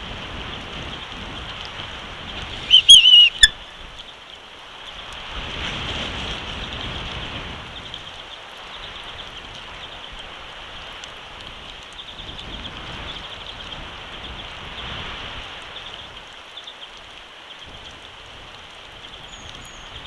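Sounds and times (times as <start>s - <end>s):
wind buffeting microphone: 0.0s - 4.1s, 4.8s - 16.3s
steady rain: 0.0s - 20.0s.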